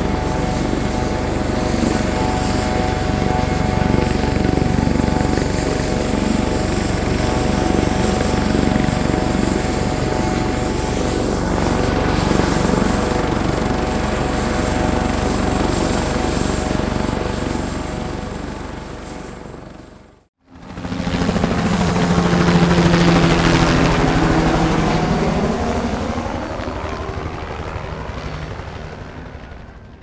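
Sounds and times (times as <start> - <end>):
turbine whine: 0.0 - 19.7
helicopter rotor chop: 0.0 - 30.0.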